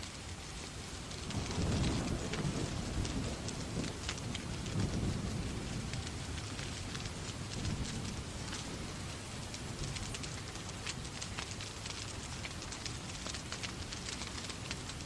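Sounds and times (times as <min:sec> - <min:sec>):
sharp crackles: 0:00.0 - 0:15.0
steady rain: 0:00.0 - 0:15.0
distant thunder rumbling: 0:01.2 - 0:10.2.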